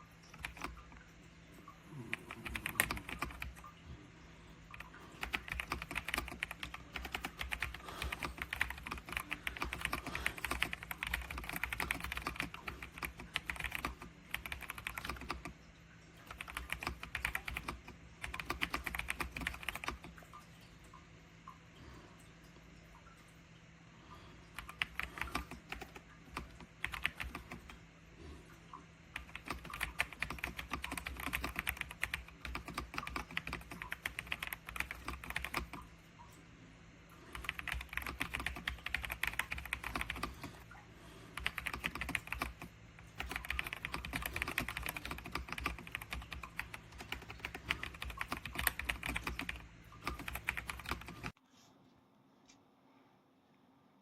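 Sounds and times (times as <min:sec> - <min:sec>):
mechanical keyboard typing: 0:00.0 - 0:01.1, 0:01.9 - 0:03.8, 0:04.7 - 0:15.6, 0:16.2 - 0:20.2, 0:24.5 - 0:27.8, 0:29.2 - 0:35.9, 0:37.2 - 0:40.6, 0:41.3 - 0:51.4
steady low hum: 0:00.0 - 0:54.0.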